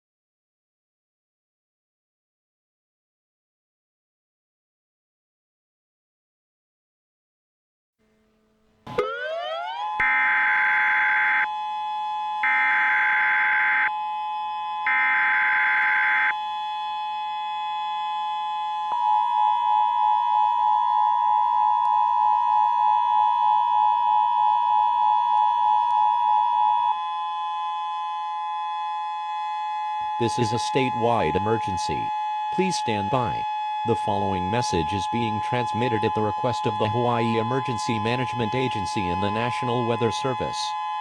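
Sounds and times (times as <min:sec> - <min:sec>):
siren two-note wail: 0:08.0 - 0:41.0
two-tone attention signal: 0:08.9 - 0:11.5.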